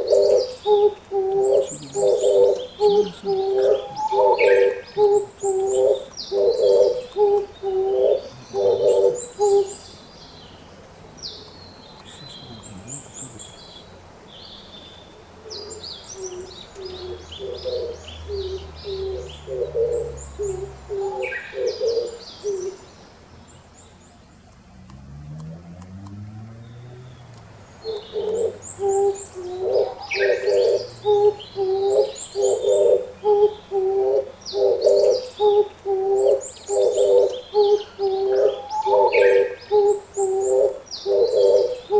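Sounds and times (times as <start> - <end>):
dove hooting coo: 0.0 - 9.8, 15.4 - 22.8, 27.8 - 41.9
small birds chirping: 0.0 - 41.9.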